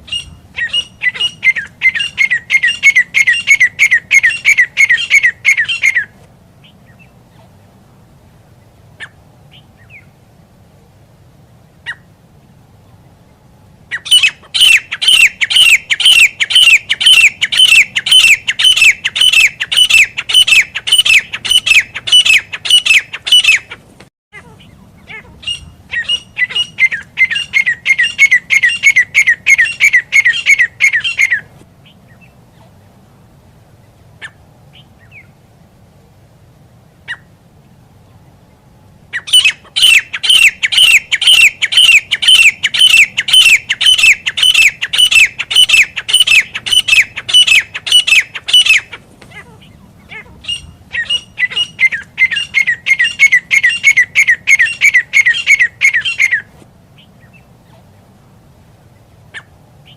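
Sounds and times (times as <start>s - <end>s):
francolin calling: 0.0s - 7.6s, 12.9s - 23.8s, 24.4s - 32.8s, 38.0s - 57.9s.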